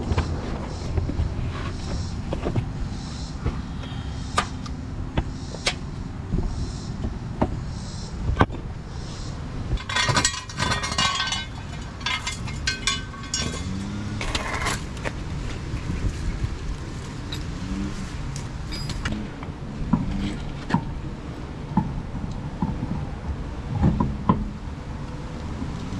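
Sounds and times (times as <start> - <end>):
light metallic clinks: 9.8 - 14.0, 18.7 - 19.1
clattering rattles: 9.8 - 16.6, 18.3 - 19.2.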